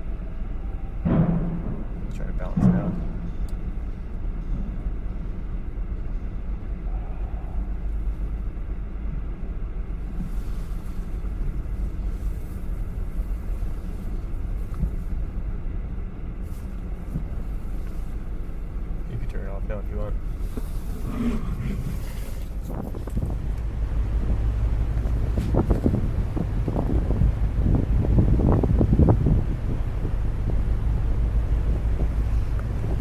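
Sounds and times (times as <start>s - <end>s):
faint constant hum: 0.0s - 33.0s
ferry engines rumbling: 0.0s - 33.0s.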